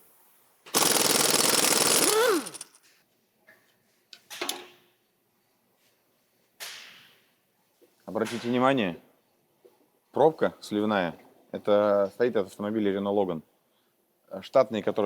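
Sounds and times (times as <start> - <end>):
impact wrench hammering: 0.8 - 2.8.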